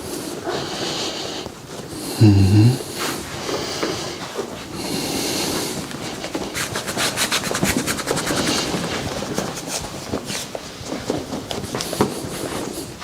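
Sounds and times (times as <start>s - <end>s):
hands rubbing on skin: 6.4s - 10.5s.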